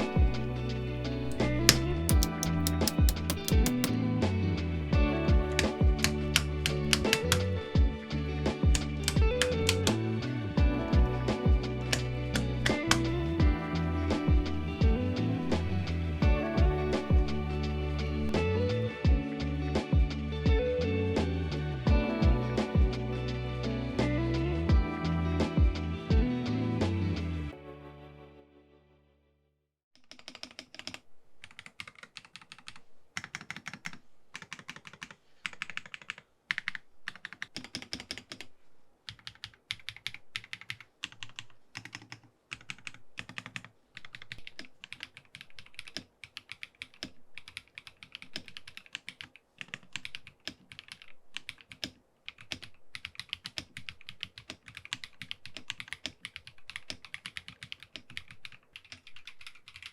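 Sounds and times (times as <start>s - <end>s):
mechanical keyboard typing: 1.3s - 3.9s, 5.5s - 7.5s, 30.0s - 38.5s, 39.1s - 59.9s.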